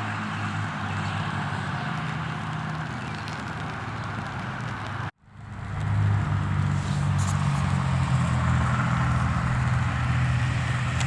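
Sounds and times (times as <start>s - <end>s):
vehicle engine idling: 5.2s - 11.0s.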